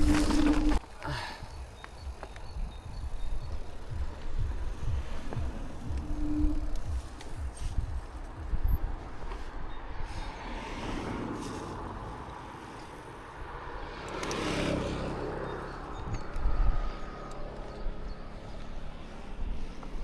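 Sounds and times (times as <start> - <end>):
bike tyres rolling on trail: 0.0 - 9.7.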